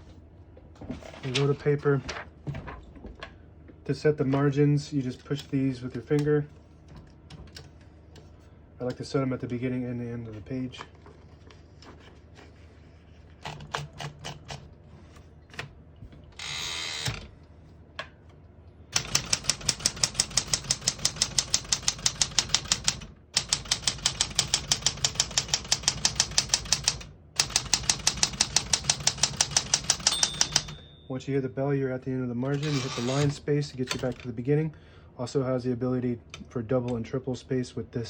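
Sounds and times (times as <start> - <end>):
typewriter keystrokes: 19.0 - 30.8
typewriter rasping: 19.0 - 30.8, 32.5 - 34.2.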